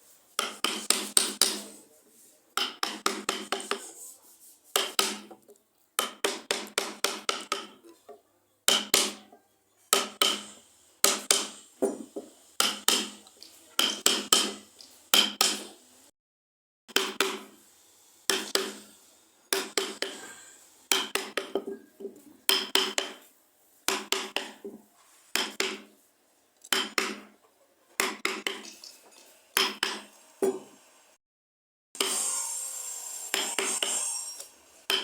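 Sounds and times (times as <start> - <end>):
hammer tapping: 0.4 - 1.7, 2.6 - 3.9, 4.8 - 5.4, 6.0 - 7.8, 8.7 - 9.2, 9.9 - 13.2, 13.8 - 15.7, 18.3 - 18.8, 19.5 - 20.2, 20.9 - 23.2, 23.9 - 24.8, 25.4 - 25.9, 26.7 - 27.3, 29.6 - 30.7.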